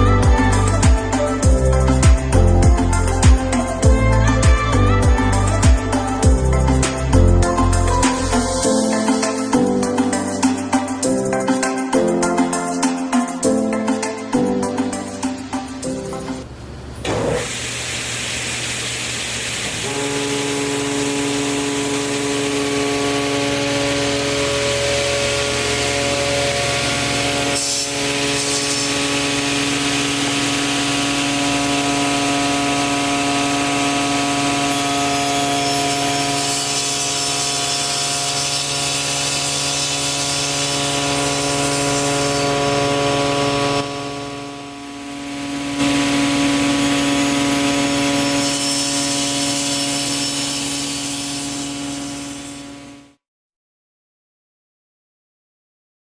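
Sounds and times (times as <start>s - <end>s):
table saw cutting wood: 0.0s - 12.6s, 14.9s - 53.2s.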